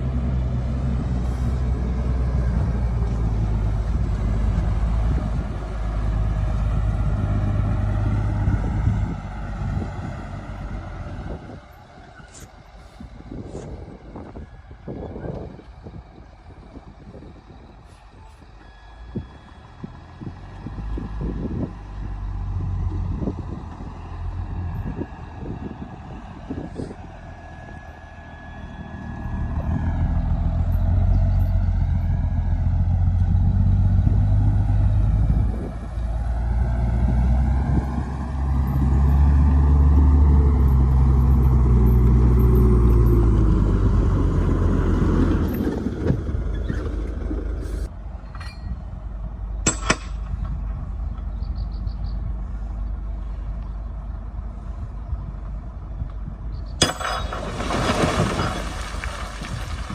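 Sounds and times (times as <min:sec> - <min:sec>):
diesel engine revving: 0:00.0 - 0:17.8, 0:18.4 - 0:47.9.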